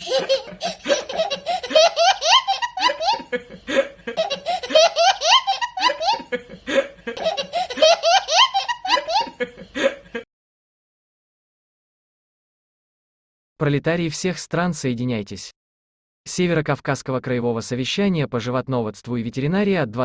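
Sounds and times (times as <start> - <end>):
hearty rapid laughter: 0.0 - 10.2.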